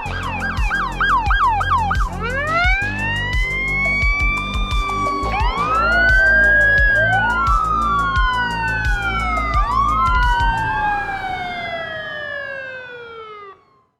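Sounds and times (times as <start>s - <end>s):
music with steady drum beat: 0.0s - 10.7s
fire engine sirens wailing: 0.0s - 13.9s.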